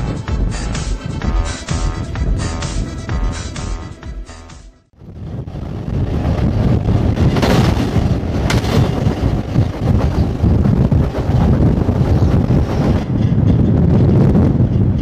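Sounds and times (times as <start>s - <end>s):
freight train rumble: 0.0s - 15.0s
wind buffeting microphone: 4.9s - 15.0s.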